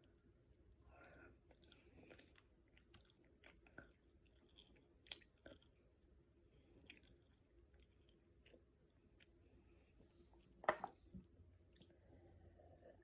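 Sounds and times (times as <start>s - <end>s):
person chewing: 0.8s - 5.8s, 6.7s - 8.6s.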